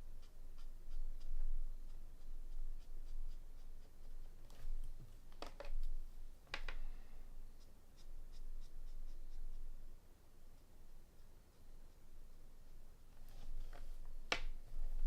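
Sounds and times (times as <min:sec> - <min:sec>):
markers scratching on card: 0:00.0 - 0:04.8, 0:07.5 - 0:09.6.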